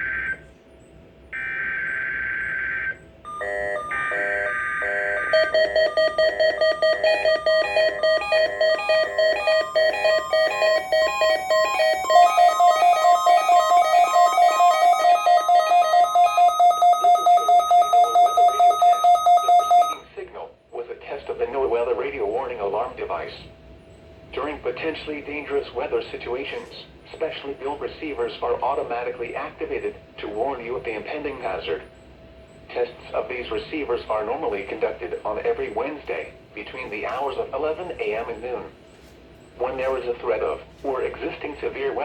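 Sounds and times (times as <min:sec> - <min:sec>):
pulsing electronic warning alarm: 0:00.0 - 0:00.4, 0:01.4 - 0:20.1
buzzy data bursts: 0:03.3 - 0:20.0.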